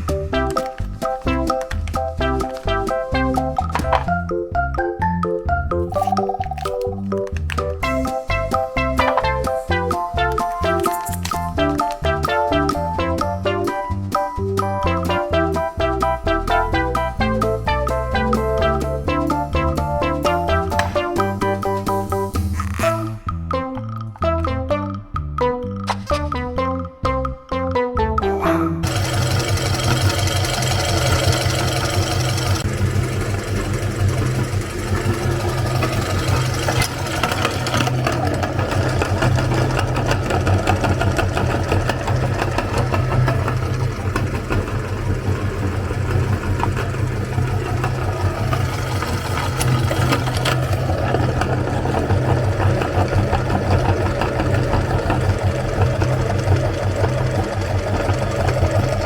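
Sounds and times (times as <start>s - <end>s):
electric meat grinder humming: 28.8s - 59.0s.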